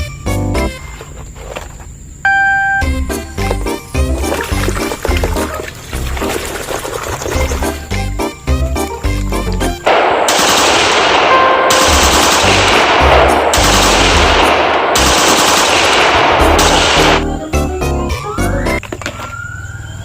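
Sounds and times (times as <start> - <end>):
background music with bass line: 2.8 - 6.4, 7.3 - 9.9, 16.4 - 18.8
automatic gunfire: 9.9 - 17.2.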